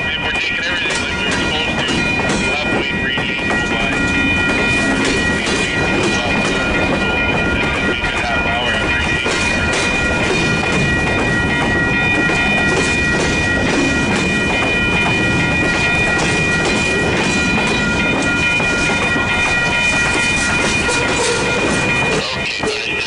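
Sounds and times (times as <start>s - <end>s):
train wheels clattering over rail joints: 8.8s - 23.0s.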